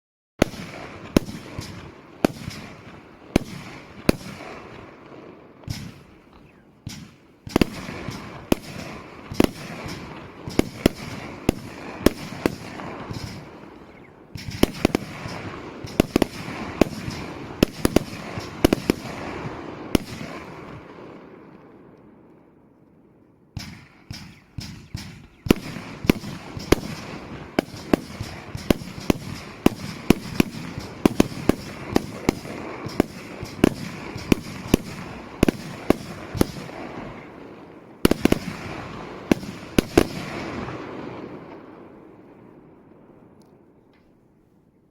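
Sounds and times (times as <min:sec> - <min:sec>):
firework shots and bursts: 0:00.4 - 0:21.7, 0:23.6 - 0:42.2
firework crackling: 0:06.9 - 0:20.7, 0:23.7 - 0:41.4.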